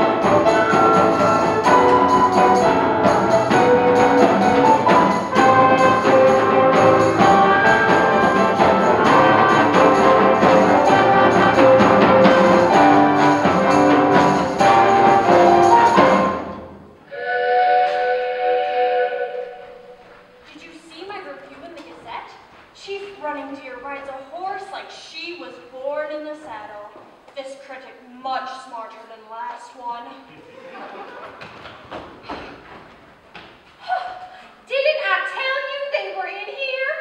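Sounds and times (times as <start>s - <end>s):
orchestral music: 0.0s - 20.5s.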